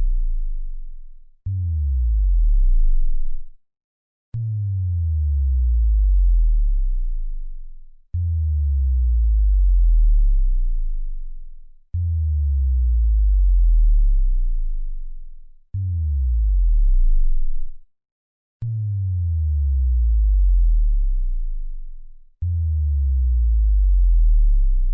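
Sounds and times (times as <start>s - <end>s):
synthesized bass drop: 1.6s - 3.4s, 15.8s - 17.7s, 18.6s - 21.8s, 22.4s - 24.9s.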